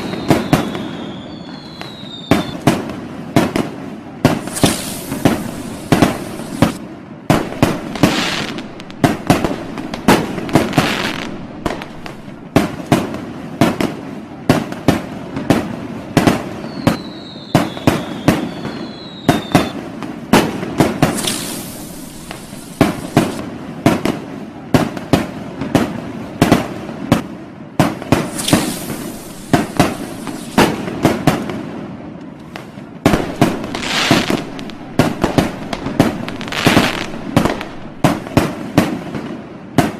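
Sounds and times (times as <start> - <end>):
falling firework whistle: 0.0 - 2.8, 4.3 - 6.8, 7.4 - 12.7, 16.2 - 19.9, 20.8 - 23.4, 28.1 - 31.3, 32.4 - 39.0
firecrackers banging and popping: 0.0 - 39.9
crackling hiss: 4.2 - 13.2, 16.6 - 23.5, 28.1 - 31.5, 32.3 - 39.1.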